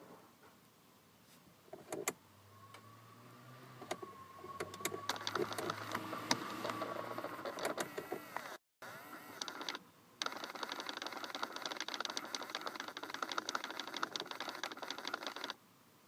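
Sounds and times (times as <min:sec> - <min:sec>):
servo motor whining: 0:02.4 - 0:15.5
servo motor clicking: 0:03.8 - 0:15.6.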